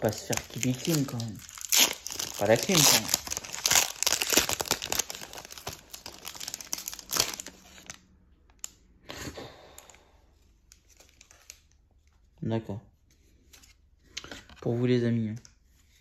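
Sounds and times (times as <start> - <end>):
cards rustling: 0.0 - 8.0
foil wrapper crinkling: 0.0 - 8.0
foil tearing: 0.3 - 7.6.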